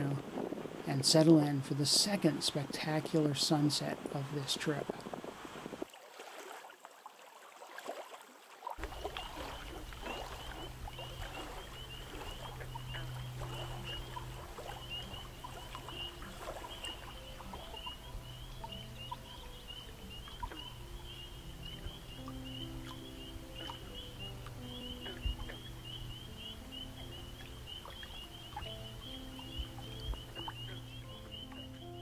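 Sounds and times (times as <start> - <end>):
low steady hum: 8.8 - 31.2
frogs peeping: 8.8 - 32.0.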